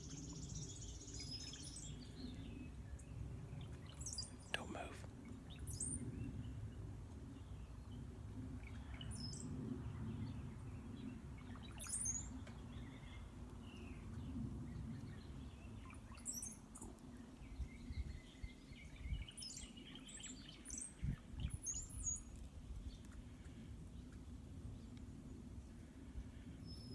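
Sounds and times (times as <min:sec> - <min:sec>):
birds chirping: 0:00.0 - 0:06.6.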